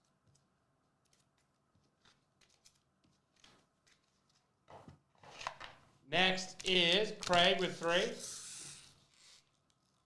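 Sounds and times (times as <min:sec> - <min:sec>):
trading cards rustling and clicking: 0:05.4 - 0:08.9.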